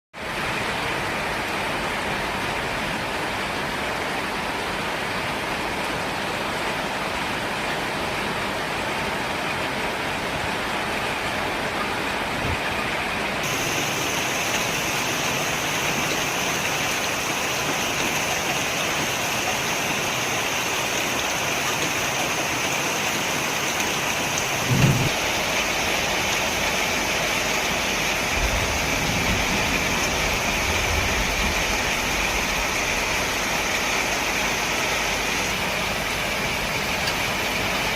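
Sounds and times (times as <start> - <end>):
low rumble: 24.5 - 25.3
brief thump: 24.6 - 25.2.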